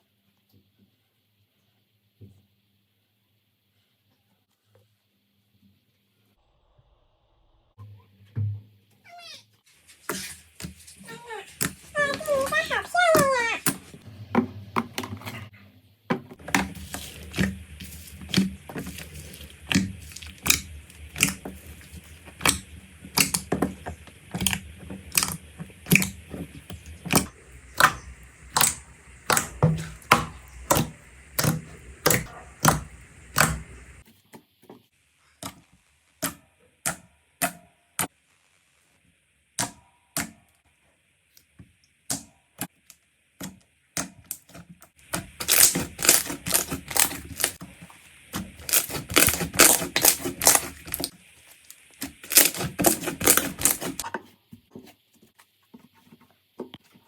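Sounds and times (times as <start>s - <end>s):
slime popping and clicking: 27.0s - 34.0s, 45.1s - 47.6s, 48.6s - 51.1s.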